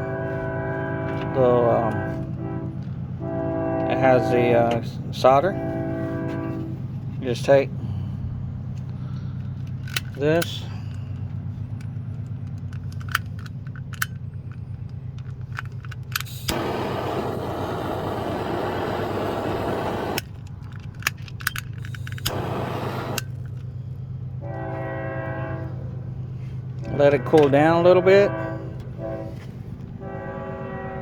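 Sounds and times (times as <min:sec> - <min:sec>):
low hum: 0:00.0 - 0:31.0
handling clicks: 0:08.7 - 0:16.8, 0:19.3 - 0:23.8
heat tool hissing: 0:16.3 - 0:20.2, 0:22.0 - 0:23.3.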